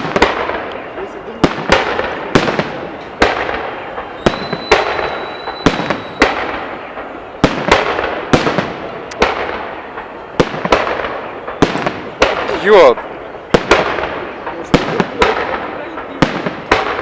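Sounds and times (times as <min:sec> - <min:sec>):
fireworks shells bursting: 0:00.0 - 0:17.0
faint thin whistle: 0:04.1 - 0:06.4.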